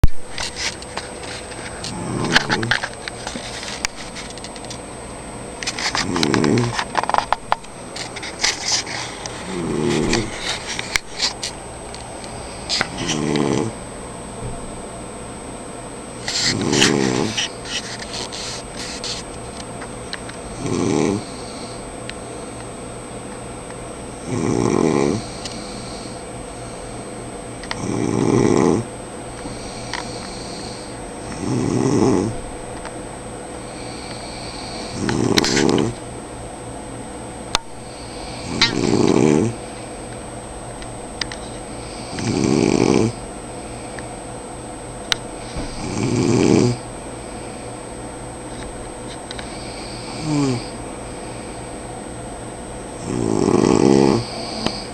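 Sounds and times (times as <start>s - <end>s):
man snoring: 1.9s - 2.7s, 6.0s - 6.8s, 9.4s - 10.6s, 12.7s - 13.8s, 16.4s - 17.5s, 20.6s - 21.8s, 24.2s - 26.2s, 27.8s - 28.9s, 29.5s - 32.4s, 33.7s - 36.0s, 37.9s - 39.6s, 41.8s - 43.2s, 45.4s - 46.8s, 49.5s - 50.8s, 53.0s - 54.9s.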